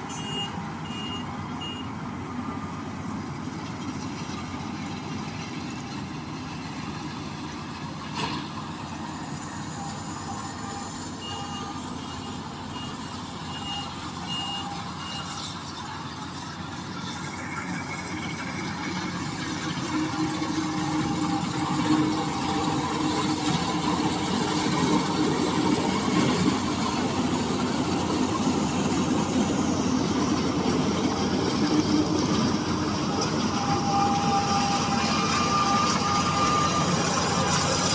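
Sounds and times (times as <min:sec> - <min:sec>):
combine harvester running: 0:00.0 - 0:37.9
short warning beeps: 0:00.1 - 0:01.9, 0:09.8 - 0:15.4.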